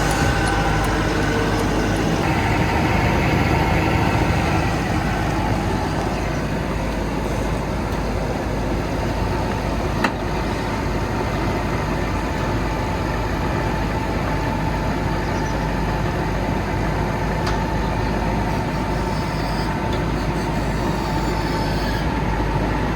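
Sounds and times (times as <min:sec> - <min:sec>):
constant whine: 0:00.0 - 0:22.9
diesel engine running: 0:00.0 - 0:22.9.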